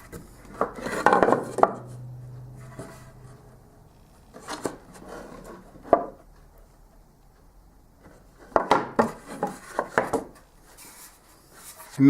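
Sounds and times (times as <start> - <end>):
wooden knocks and scraping: 0.0 - 2.0, 4.3 - 6.2, 8.0 - 11.9
sharp wooden knocks: 0.6 - 1.9, 8.4 - 10.4.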